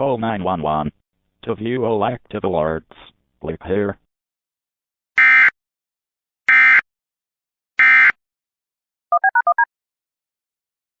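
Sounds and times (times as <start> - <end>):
short two-tone beeps: 9.1 - 9.7.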